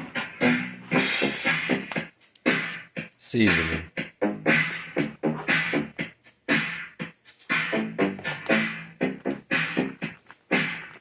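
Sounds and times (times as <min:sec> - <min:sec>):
electronic funk music: 0:00.0 - 0:11.0.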